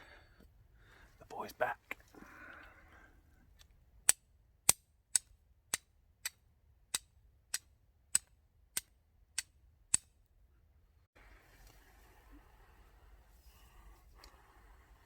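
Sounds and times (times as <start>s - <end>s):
fire steel striking clicks: 3.6s - 10.3s.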